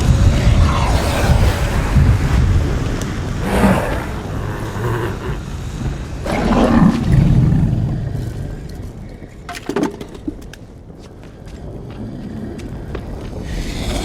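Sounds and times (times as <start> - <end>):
dragon growling roar: 0.0 - 8.7.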